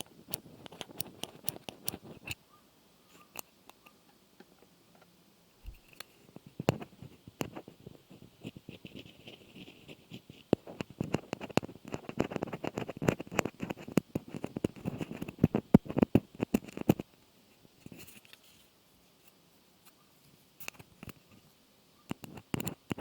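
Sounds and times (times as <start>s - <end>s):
rapid tapping and scratching: 0.0s - 2.4s, 3.2s - 17.1s, 22.1s - 23.0s.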